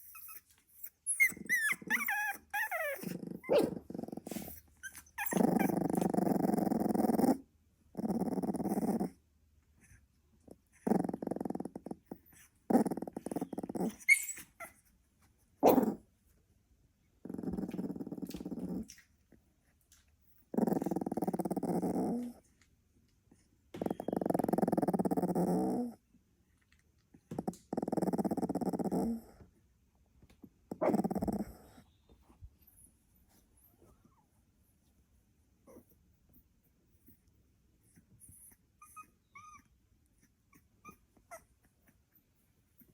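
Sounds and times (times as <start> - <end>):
puppy whimpering: 0.0 - 7.4, 12.7 - 14.9, 23.8 - 25.9, 35.7 - 36.0, 37.9 - 42.2
puppy growly snoring: 1.2 - 9.2, 9.8 - 14.3, 15.6 - 16.0, 17.2 - 19.0, 20.4 - 22.5, 23.8 - 26.1, 27.3 - 29.5, 30.7 - 31.9, 35.6 - 35.9.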